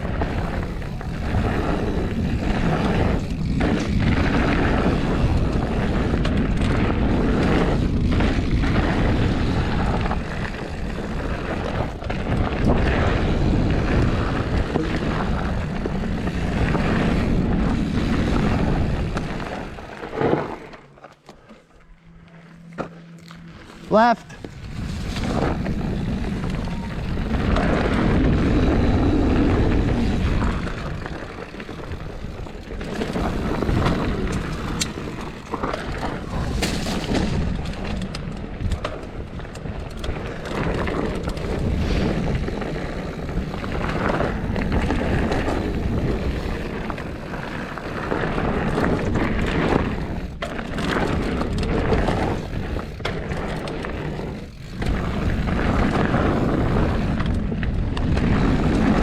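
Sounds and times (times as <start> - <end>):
wind rushing over microphone: 0.0 - 20.6, 23.5 - 59.0
bike clicks and rattles: 0.0 - 59.0
tyres rolling and skidding on dirt: 0.0 - 59.0.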